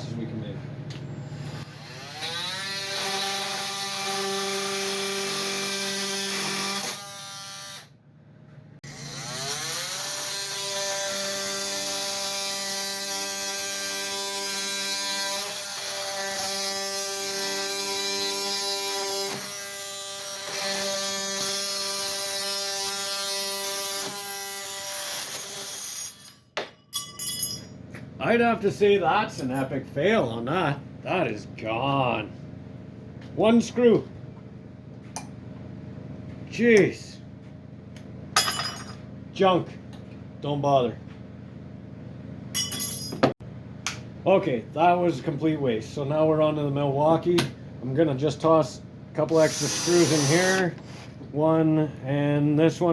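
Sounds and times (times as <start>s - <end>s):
multi-tool cutting screws: 1.4s - 7.9s, 8.9s - 26.4s, 49.2s - 51.2s.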